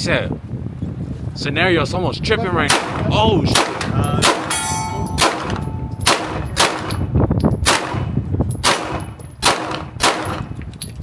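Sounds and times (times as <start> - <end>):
steel target clanging: 2.7 - 10.5
gunshots: 2.7 - 10.6.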